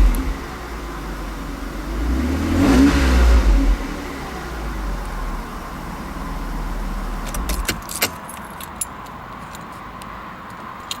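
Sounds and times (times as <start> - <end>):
car engine running: 0.0 - 8.0.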